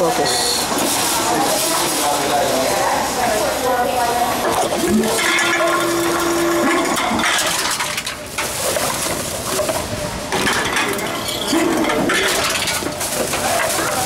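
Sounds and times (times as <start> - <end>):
bottles and cans clattering: 4.5 - 14.0.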